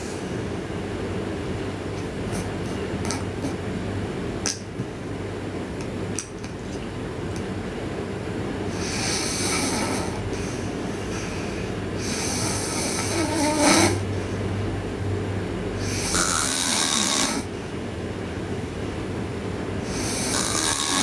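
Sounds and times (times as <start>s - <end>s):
person snoring: 8.7s - 14.1s, 15.8s - 17.5s, 19.8s - 21.0s.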